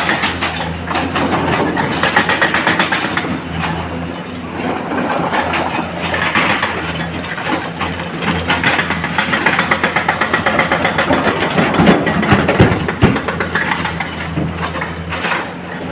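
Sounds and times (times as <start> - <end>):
excavator diesel engine running: 0.0 - 15.9
dense rapid clatter: 8.3 - 14.5.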